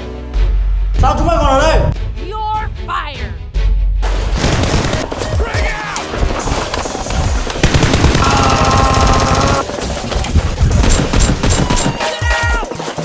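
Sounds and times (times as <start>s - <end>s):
background music: 0.0s - 13.0s
machine-gun fire: 4.0s - 12.2s.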